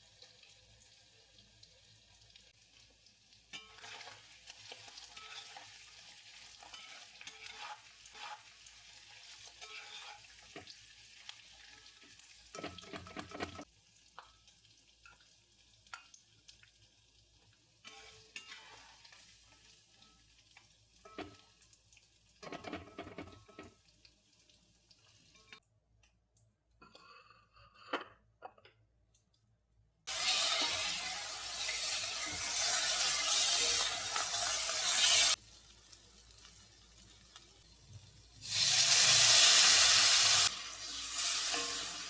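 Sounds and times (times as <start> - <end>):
food sizzling in a pan: 0.0 - 25.6, 30.1 - 42.0
utensil scraping a pan: 6.5 - 8.7, 9.4 - 10.7, 30.1 - 35.4, 38.5 - 42.0.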